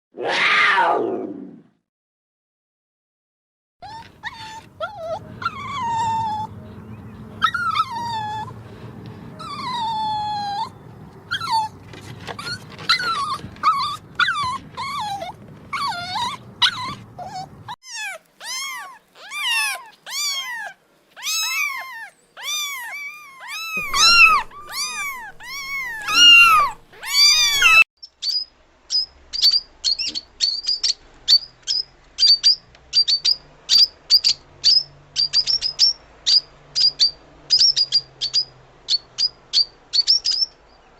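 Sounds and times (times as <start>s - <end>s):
animal cries: 0.2s - 1.4s, 3.8s - 27.9s.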